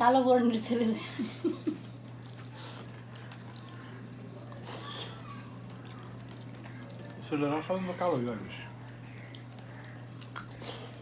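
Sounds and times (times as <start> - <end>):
steady low hum: 0.0 - 11.0
wet chewing sounds: 1.6 - 8.1, 8.7 - 11.0.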